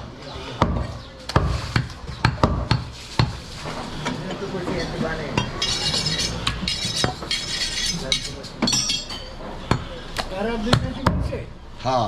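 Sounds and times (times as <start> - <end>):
metallic scraping and clinking of blade: 5.6 - 9.2.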